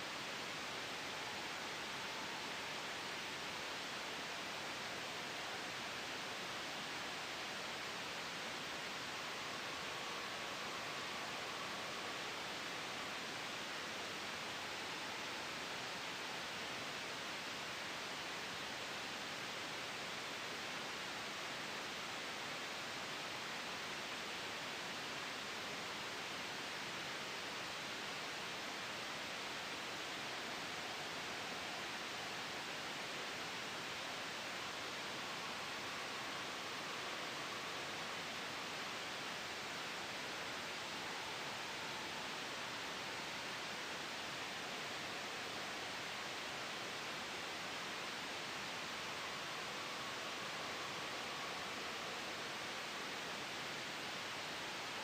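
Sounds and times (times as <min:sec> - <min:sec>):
steady white noise hiss: 0:00.0 - 0:55.0.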